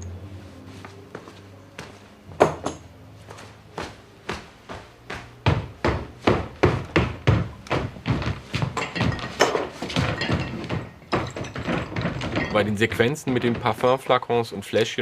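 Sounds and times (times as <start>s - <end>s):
wooden knocks and thuds: 2.3s - 2.8s, 5.4s - 14.0s.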